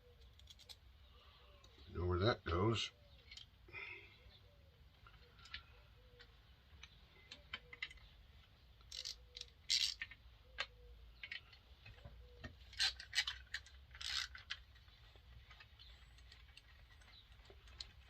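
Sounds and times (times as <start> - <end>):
metal parts and tools clicking: 0.2 - 0.8, 8.8 - 12.0, 12.6 - 18.0.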